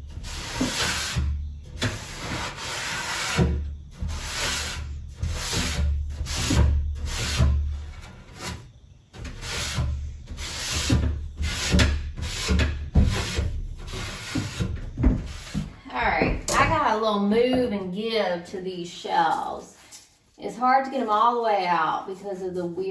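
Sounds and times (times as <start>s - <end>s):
rubbing on wooden shelf: 0.0s - 17.7s.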